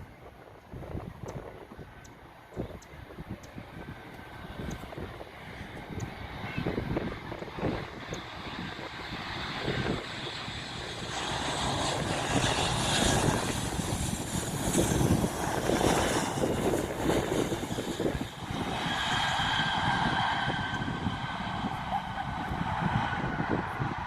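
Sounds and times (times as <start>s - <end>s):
airplane engines passing: 0.0s - 24.0s
steady whine: 5.6s - 24.0s.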